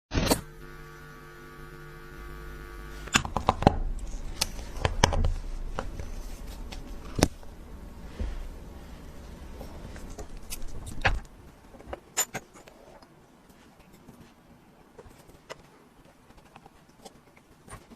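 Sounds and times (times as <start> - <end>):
electrical hum: 0.1 - 13.7.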